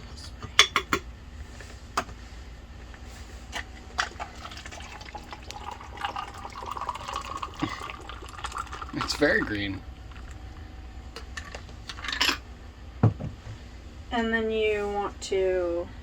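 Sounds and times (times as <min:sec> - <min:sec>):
drink poured into a glass: 0:04.0 - 0:10.4.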